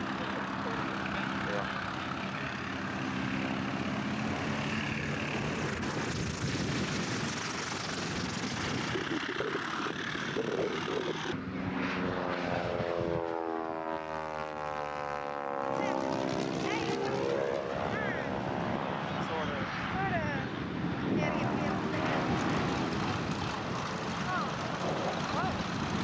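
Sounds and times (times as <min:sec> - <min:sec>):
propeller plane flying past: 0:00.0 - 0:26.0.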